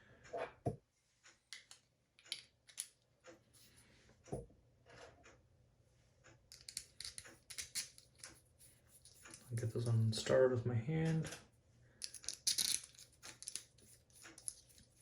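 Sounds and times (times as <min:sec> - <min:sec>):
small parts clicking and tapping: 0:01.3 - 0:03.4, 0:06.2 - 0:09.9, 0:12.0 - 0:15.0.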